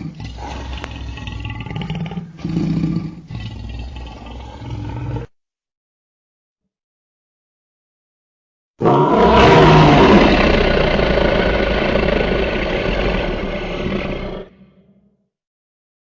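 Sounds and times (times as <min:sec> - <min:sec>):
dinosaur roar: 0:00.0 - 0:05.3, 0:08.8 - 0:15.1.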